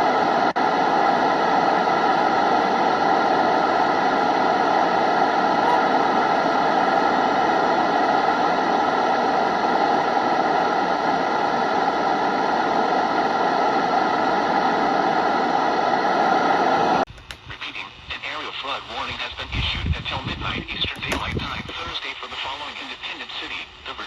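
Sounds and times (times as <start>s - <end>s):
radio static hiss: 17.0s - 24.0s.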